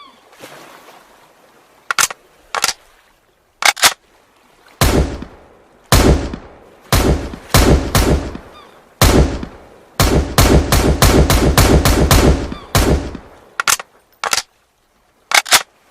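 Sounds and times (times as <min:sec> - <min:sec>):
rifle gunshots echoing: 0:04.8 - 0:14.4.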